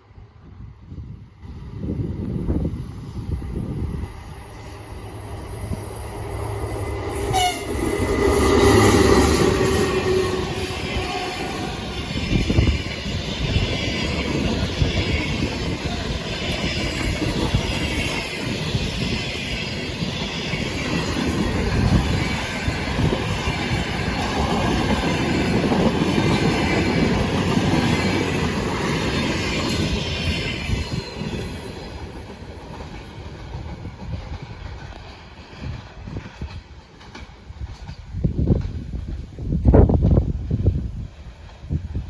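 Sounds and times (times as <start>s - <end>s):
train wheels rumbling on rails: 0.0s - 42.0s
high wheel squeal: 2.6s - 20.8s.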